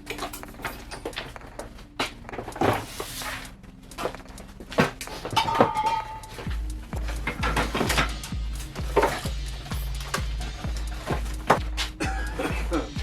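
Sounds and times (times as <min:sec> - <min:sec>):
objects knocking and clattering: 0:04.8 - 0:09.4
high ringing squeak: 0:05.1 - 0:06.5.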